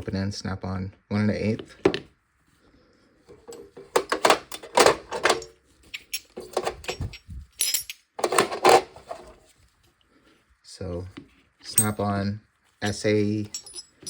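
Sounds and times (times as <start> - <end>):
metal wrenches clinking in toolbox: 3.3 - 9.3, 11.7 - 14.0.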